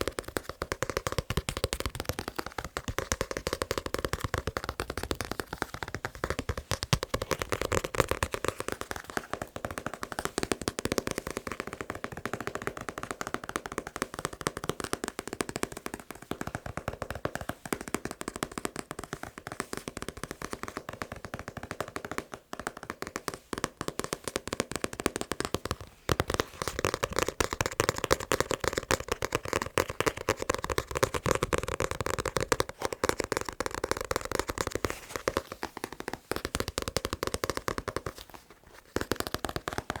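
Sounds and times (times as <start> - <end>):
fast tapping on a book: 0.0 - 40.0.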